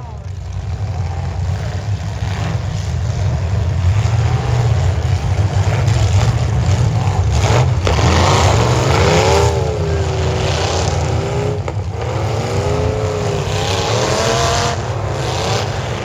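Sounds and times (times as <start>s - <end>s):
car engines revving loudly: 0.0s - 16.0s.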